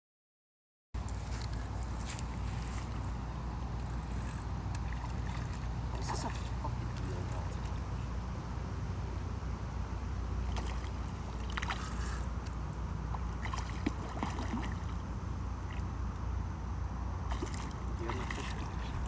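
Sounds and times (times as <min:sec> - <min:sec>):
river water running: 0:01.0 - 0:19.0
small splashes and clicks: 0:03.8 - 0:07.8, 0:10.5 - 0:15.0.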